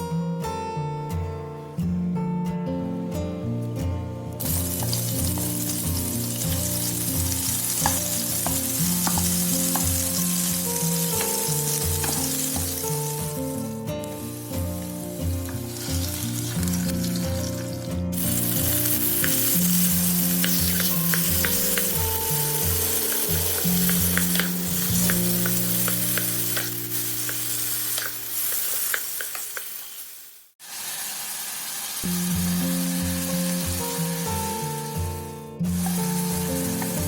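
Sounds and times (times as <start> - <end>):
background music: 0.0 - 27.8, 32.1 - 37.0
food sizzling in hot oil: 4.4 - 37.0
small pops and ticks: 28.0 - 29.8.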